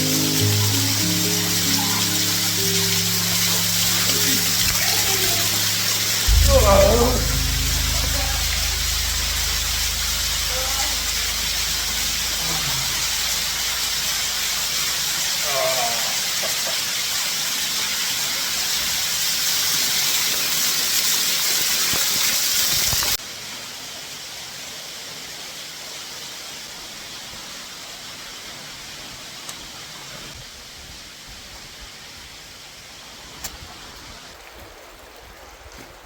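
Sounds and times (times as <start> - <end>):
rushing falling water: 0.0 - 36.0.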